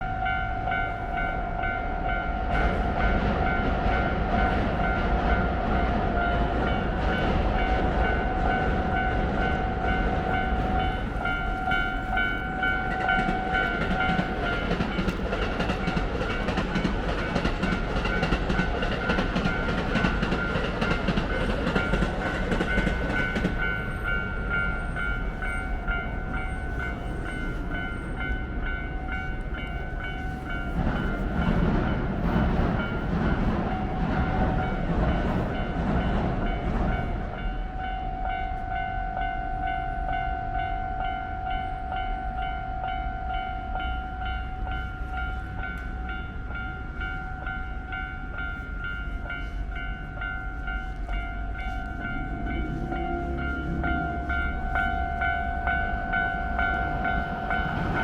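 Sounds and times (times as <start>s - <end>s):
electric train passing: 0.0s - 58.0s
level crossing warning bell: 0.0s - 58.0s.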